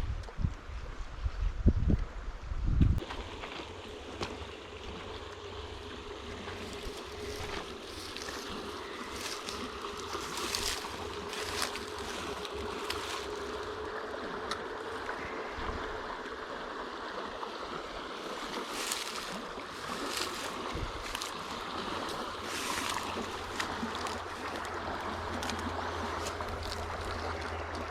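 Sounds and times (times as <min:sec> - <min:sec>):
wind buffeting microphone: 0:00.0 - 0:03.0, 0:18.4 - 0:27.7
river water flowing: 0:03.0 - 0:27.9.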